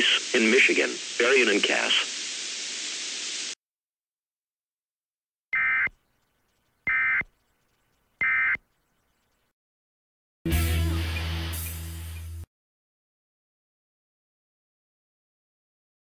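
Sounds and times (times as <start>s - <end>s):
digital alert data tones: 5.6s - 6.0s, 6.9s - 7.2s, 8.2s - 8.6s.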